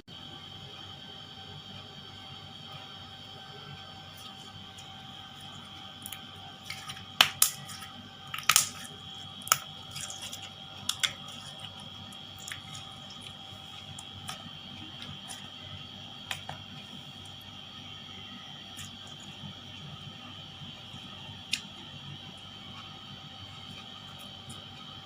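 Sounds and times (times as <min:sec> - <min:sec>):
slime squishing with pops and clicks: 0:06.0 - 0:15.5.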